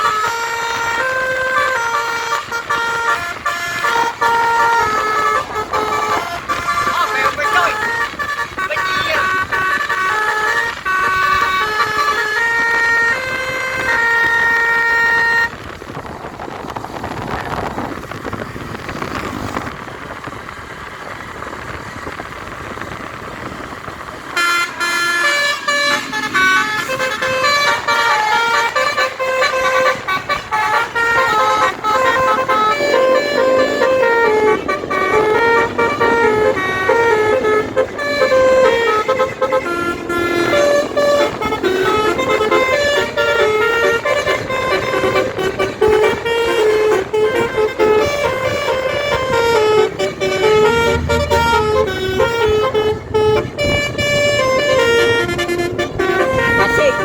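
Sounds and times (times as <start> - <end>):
musical air horn playing notes: 0.0 - 15.7, 24.4 - 57.0
road and engine noise: 0.0 - 57.0.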